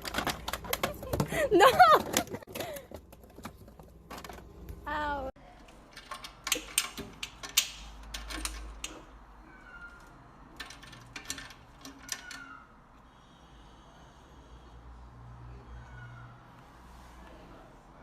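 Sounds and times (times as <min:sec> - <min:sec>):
sharp clicks and knocks: 0:05.6 - 0:09.2
cat meowing faintly: 0:15.5 - 0:16.6.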